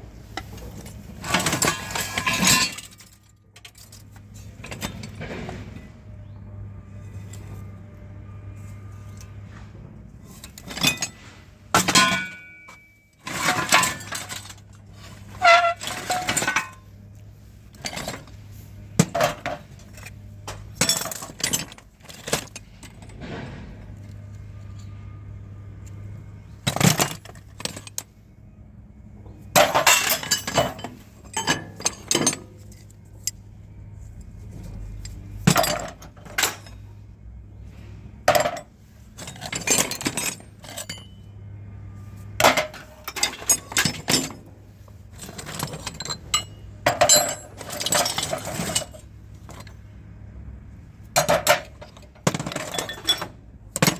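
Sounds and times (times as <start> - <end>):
scrap metal clanking: 0.2 - 28.2, 29.5 - 33.5, 34.3 - 37.0, 37.7 - 41.3, 41.9 - 49.9, 51.0 - 53.9.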